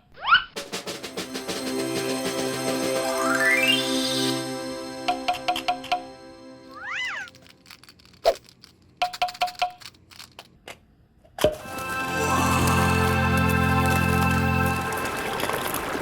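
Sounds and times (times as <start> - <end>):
music: 0.6 - 7.3, 11.6 - 16.0.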